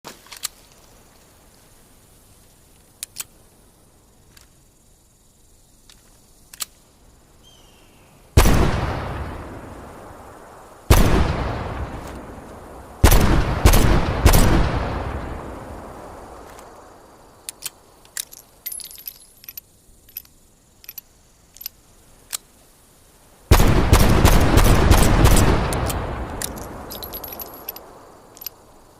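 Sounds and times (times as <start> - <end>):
sharp clicks: 5.8 - 6.8
revolver gunshots with echo: 8.4 - 9.4, 10.9 - 11.8, 13.0 - 15.0, 23.5 - 26.0.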